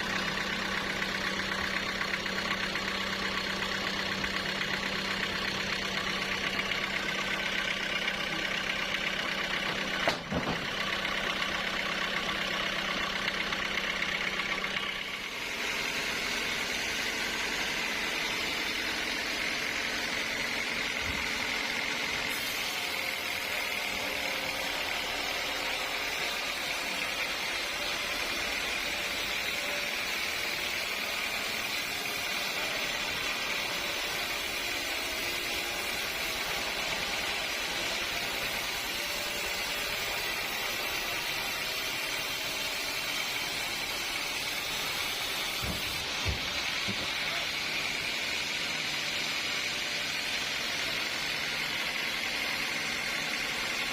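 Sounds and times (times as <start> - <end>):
sawmill machinery running: 0.0 - 53.9.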